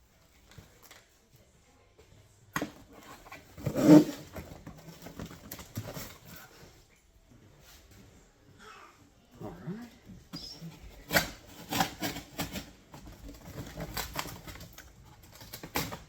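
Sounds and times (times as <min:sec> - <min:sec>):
rustling clatter: 0:02.8 - 0:06.9, 0:10.4 - 0:16.0
packaging being moved: 0:10.9 - 0:16.0.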